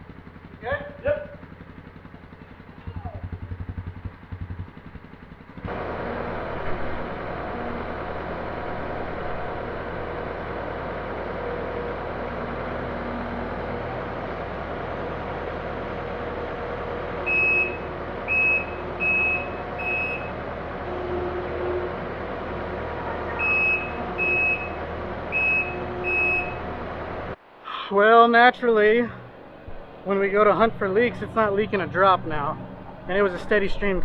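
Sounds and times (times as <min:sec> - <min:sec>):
diesel engine running: 0:00.0 - 0:34.0
reversing alarm beeps: 0:17.2 - 0:20.4, 0:23.2 - 0:26.7.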